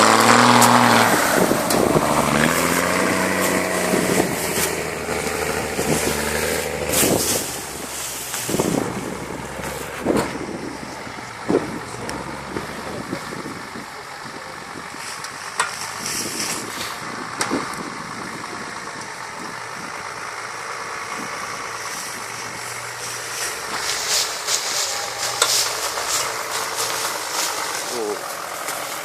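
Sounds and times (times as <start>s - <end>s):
vehicle engine running: 0.0s - 29.0s.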